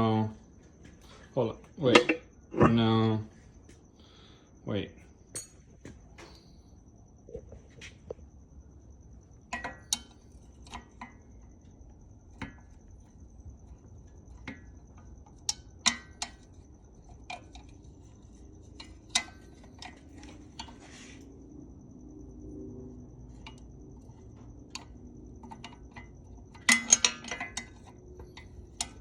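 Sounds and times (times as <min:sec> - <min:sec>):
small metal parts clinking: 0:25.5 - 0:29.0.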